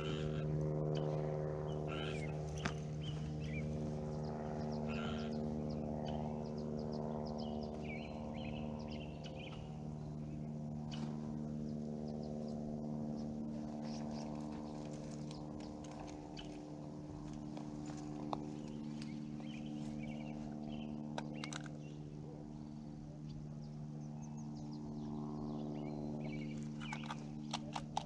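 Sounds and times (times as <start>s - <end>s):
steady low hum: 0.0s - 28.0s
bird chirps: 1.9s - 3.8s, 4.6s - 9.8s, 24.1s - 27.7s.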